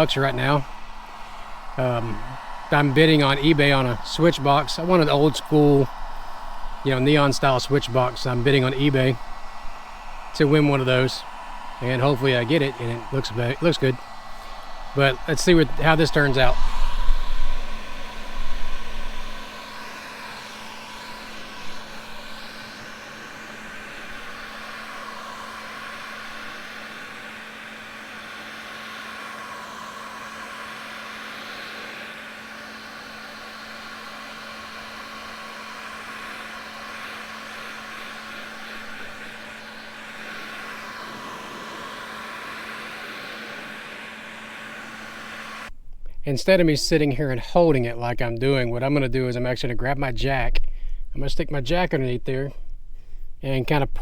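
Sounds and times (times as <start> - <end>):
heat gun blowing air: 0.0 - 45.8.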